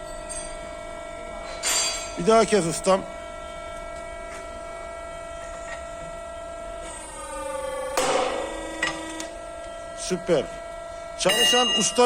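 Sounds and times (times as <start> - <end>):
rebar cutting machine motor hum: 6.5 - 10.2.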